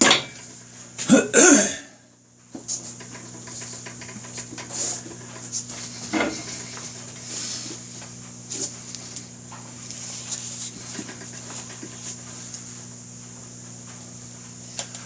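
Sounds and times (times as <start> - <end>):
steady electrical hum: 0.0 - 15.0
man coughing or grunting: 1.0 - 2.0.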